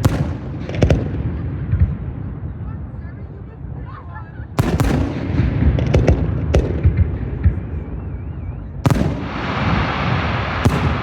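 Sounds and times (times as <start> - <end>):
fireworks bangs: 0.0 - 3.0, 4.5 - 7.9, 8.8 - 11.0
fireworks crackling hiss: 8.9 - 11.0.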